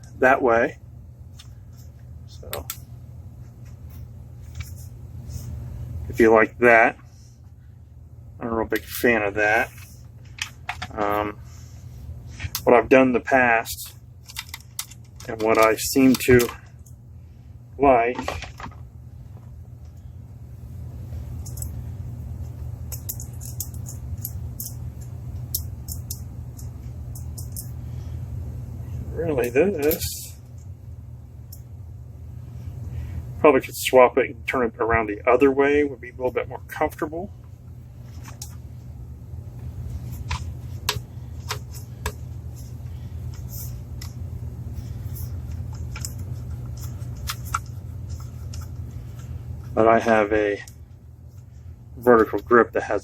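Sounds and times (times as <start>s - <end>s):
steady low hum: 0.0s - 53.0s
gear clicking and rattling: 13.8s - 16.9s.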